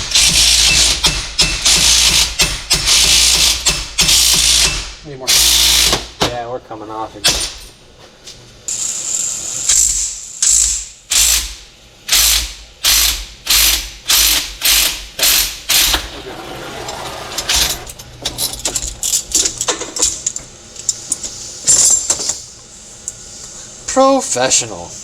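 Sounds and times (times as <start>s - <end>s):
ratchet wrench clicking: 0.0s - 6.0s, 12.1s - 16.0s.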